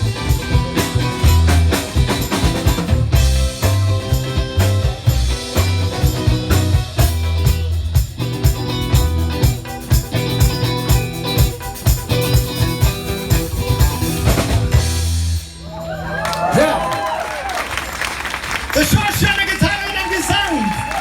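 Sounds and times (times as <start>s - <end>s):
rock band playing: 0.0s - 18.3s.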